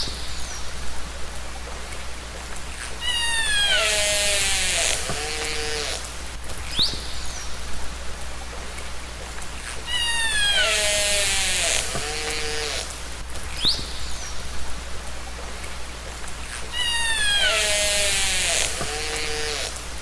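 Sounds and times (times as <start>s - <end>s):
underwater hiss: 2.8s - 6.9s, 9.6s - 13.2s, 16.4s - 20.0s
killer whale pulsed calls: 3.0s - 6.1s, 9.8s - 12.9s, 16.7s - 19.6s
killer whale rising whistle: 9.9s - 11.8s.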